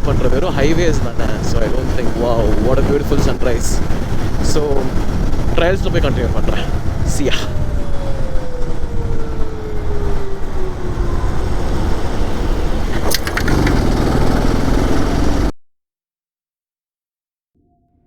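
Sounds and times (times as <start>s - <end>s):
wind rumble on microphone: 0.0s - 15.5s
motorcycle engine running: 12.5s - 15.5s.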